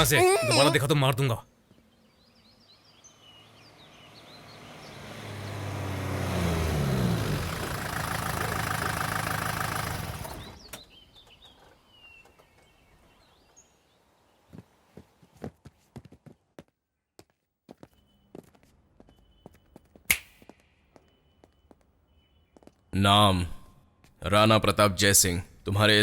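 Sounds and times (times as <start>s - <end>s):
birds chirping faintly: 0.0s - 6.2s, 7.8s - 15.5s, 17.7s - 24.2s
vehicle engine approaching: 2.5s - 14.3s.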